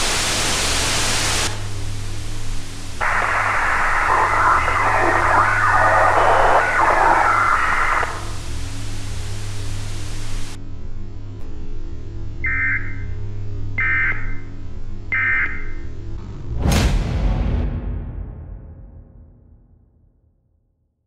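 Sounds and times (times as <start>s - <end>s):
radio static hiss: 0.0s - 10.6s
steady low hum: 0.7s - 16.5s
tinny radio transmission: 3.0s - 10.6s.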